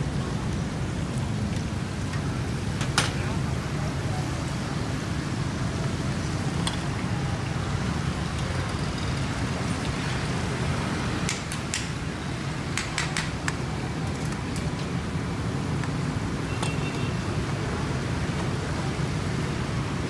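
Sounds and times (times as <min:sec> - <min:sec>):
street traffic rumble: 0:00.0 - 0:20.0.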